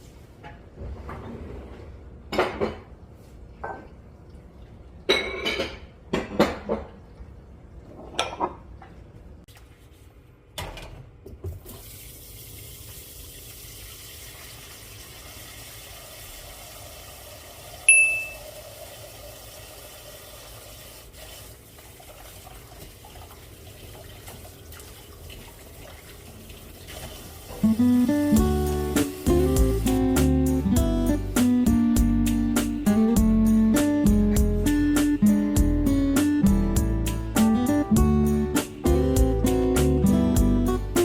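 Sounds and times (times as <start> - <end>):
dishes clattering: 0.4 - 2.9, 5.1 - 7.0, 7.9 - 8.9
water running: 11.4 - 41.0.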